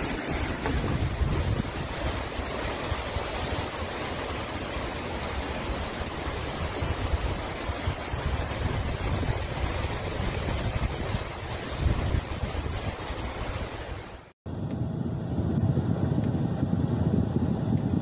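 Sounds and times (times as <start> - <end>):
steady rushing hiss: 0.0 - 14.3
wind buffeting microphone: 0.0 - 18.0.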